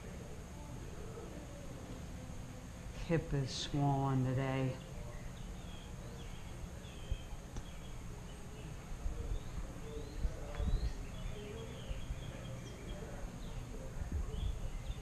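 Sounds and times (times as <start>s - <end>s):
birds chirping: 3.1s - 15.0s.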